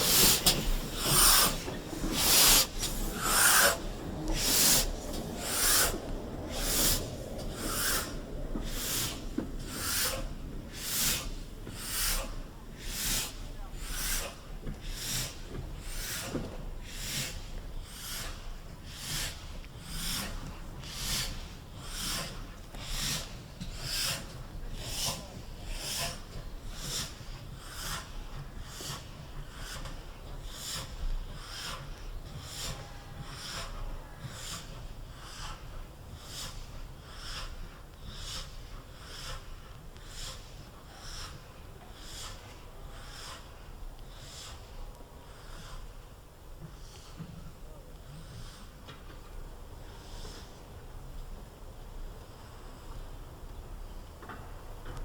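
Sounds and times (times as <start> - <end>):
low rumble: 0.0 - 11.6
steam locomotive exhaust chuffs: 0.0 - 55.0.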